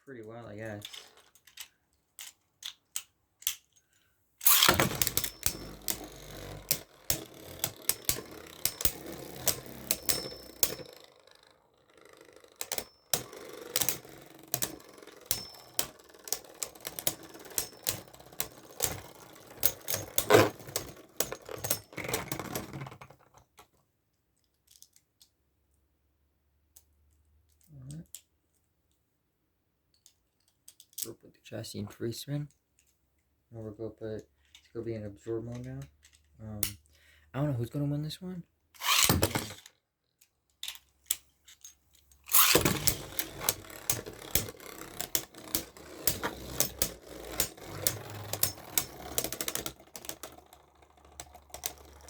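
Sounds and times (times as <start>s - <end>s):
spinning tops whirring: 4.4s - 23.1s, 38.8s - 39.7s, 42.3s - 52.0s
tops clattering sharp clicks: 42.2s - 52.0s.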